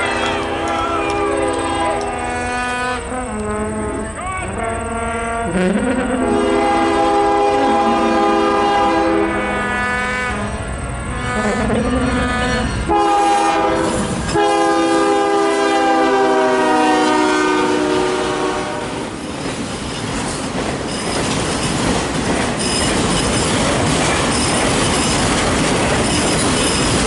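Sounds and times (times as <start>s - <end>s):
locomotive air horn: 0.0s - 19.1s
train wheels clickety-clack: 13.4s - 15.2s, 17.8s - 27.0s.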